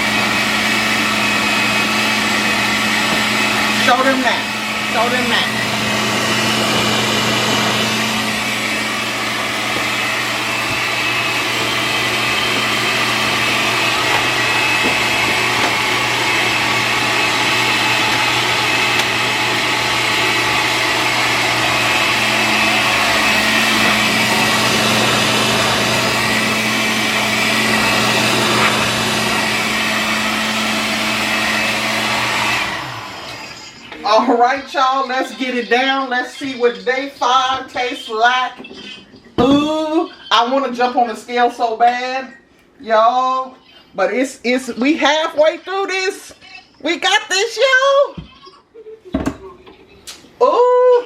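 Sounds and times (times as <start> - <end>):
blender running: 0.0 - 38.4.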